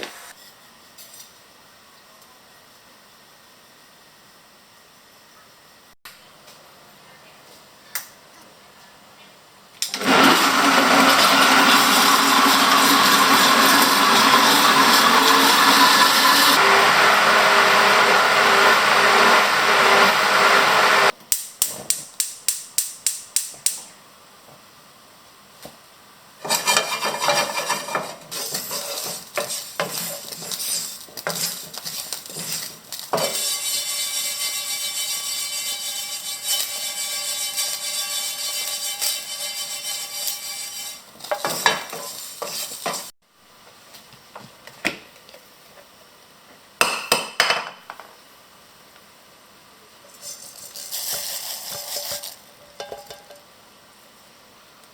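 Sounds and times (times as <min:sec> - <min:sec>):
blender running: 0:10.0 - 0:21.1
utensil stirring and scraping: 0:26.4 - 0:43.1.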